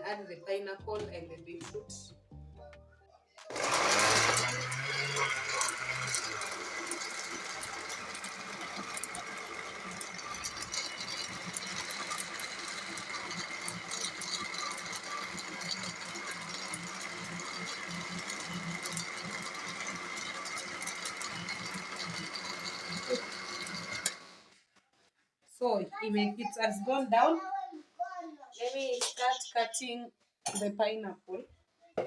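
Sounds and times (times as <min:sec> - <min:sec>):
electric blender running: 0:03.5 - 0:24.5.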